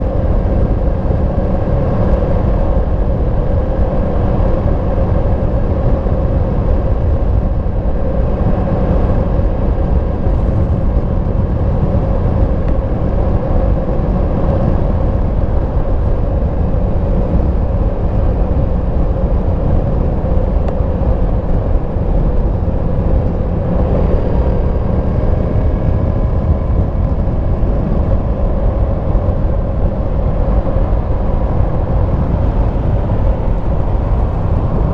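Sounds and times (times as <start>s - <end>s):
motorcycle engine cruising: 0.0s - 34.9s
road noise: 0.0s - 34.9s
wind noise: 0.0s - 34.9s.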